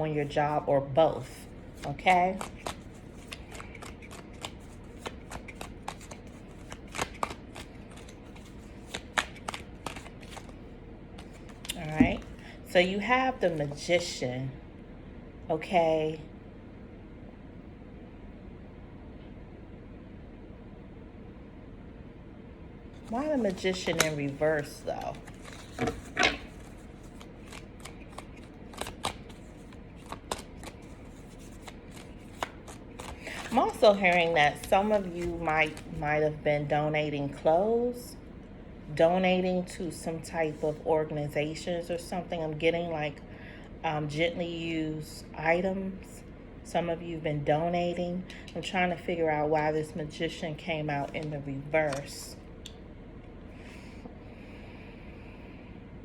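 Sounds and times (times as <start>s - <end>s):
cards being shuffled: 1.7s - 10.6s, 11.2s - 12.5s, 23.0s - 36.1s, 51.0s - 51.2s, 51.8s - 52.2s.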